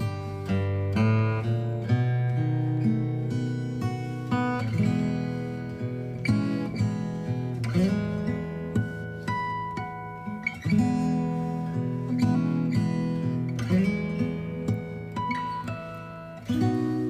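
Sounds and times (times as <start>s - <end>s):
acoustic guitar piece: 0.0s - 17.0s.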